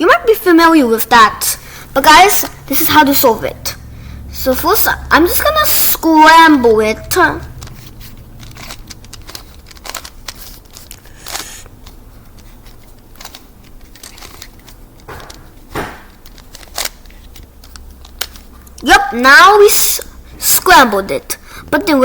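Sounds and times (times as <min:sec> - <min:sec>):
plastic puzzle pieces clicking: 0:07.6 - 0:18.8.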